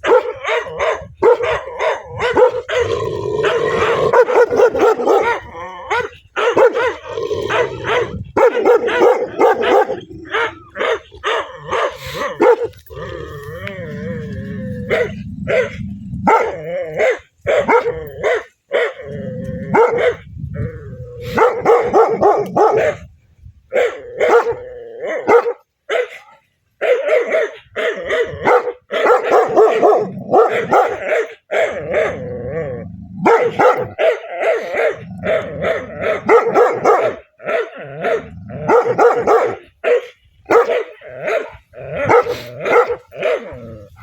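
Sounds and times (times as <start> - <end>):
dog barking aggressively: 0.0 - 13.1, 14.8 - 20.3, 21.3 - 23.1, 23.7 - 44.0
dog growling: 0.6 - 17.0, 19.0 - 23.0, 29.3 - 39.0, 40.9 - 44.0.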